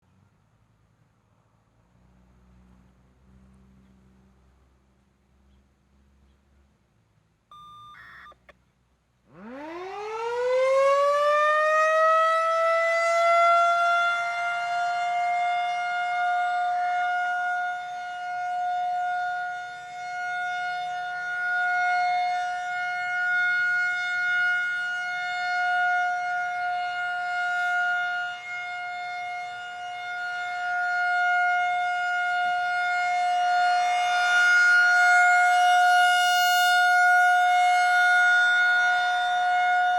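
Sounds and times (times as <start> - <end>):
rotating warning siren: 7.5 - 8.6, 9.3 - 39.9.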